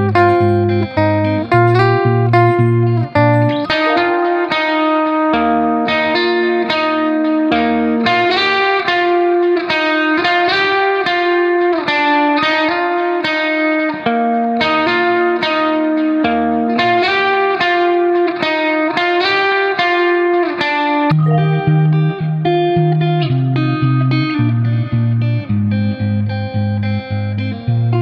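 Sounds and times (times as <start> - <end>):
plucked guitar melody: 0.0 - 28.0.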